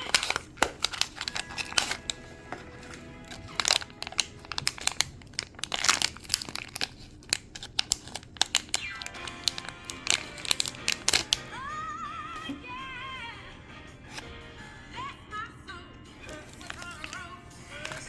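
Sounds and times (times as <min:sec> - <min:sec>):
background music: 0:00.0 - 0:05.3, 0:08.8 - 0:18.0
packaging crinkling: 0:00.0 - 0:11.5, 0:16.3 - 0:18.0.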